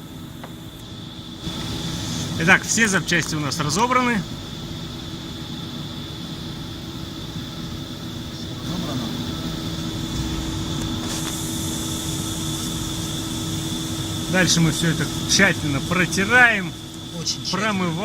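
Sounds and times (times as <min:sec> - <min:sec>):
workshop machinery hum with whine: 0:00.0 - 0:18.0
hiss: 0:01.1 - 0:04.5, 0:08.2 - 0:18.0.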